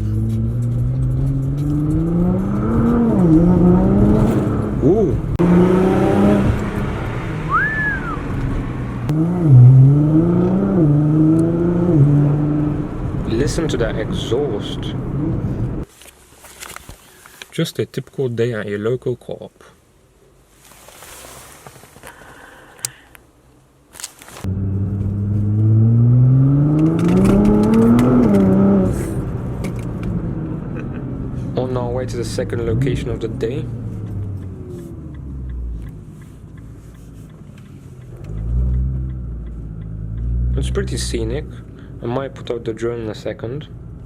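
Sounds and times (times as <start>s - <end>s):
car exhaust: 0.0s - 15.9s, 24.5s - 42.2s
short whistle: 7.5s - 8.2s.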